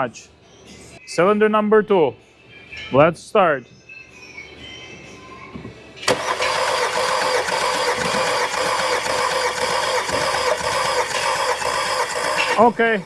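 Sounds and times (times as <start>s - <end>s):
starter cranking engine: 6.0s - 13.0s.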